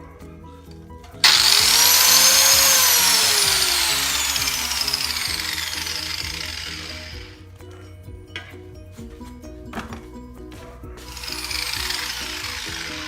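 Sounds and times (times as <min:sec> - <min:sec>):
angle grinder cutting tile: 0:01.2 - 0:07.4, 0:11.1 - 0:13.0.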